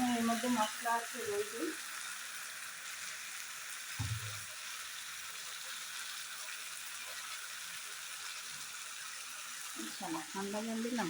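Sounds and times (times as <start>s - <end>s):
chicken sizzling in hot oil: 0.0s - 11.0s
low thud: 4.0s - 4.4s.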